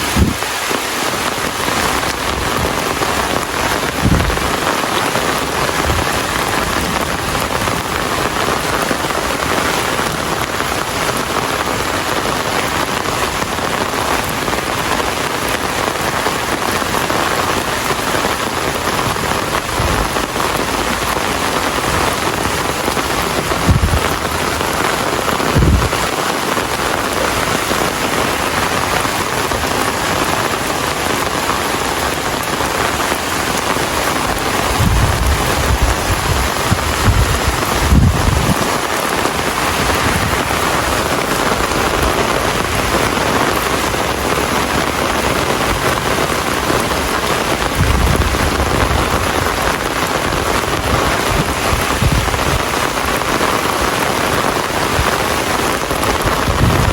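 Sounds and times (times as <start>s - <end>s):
steady rain pattering: 0.0s - 56.9s
low thumps: 23.2s - 24.6s, 25.5s - 26.0s.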